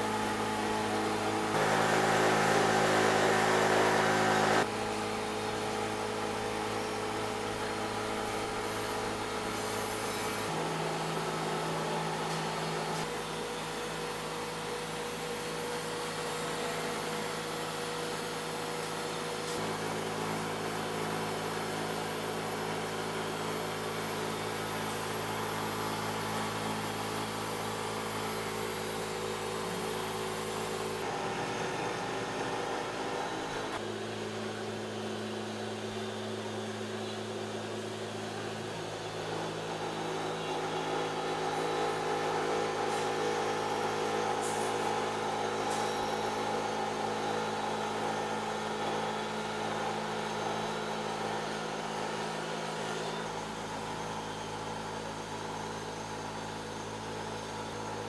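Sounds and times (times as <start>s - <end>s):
machine humming: 0.1s - 4.7s.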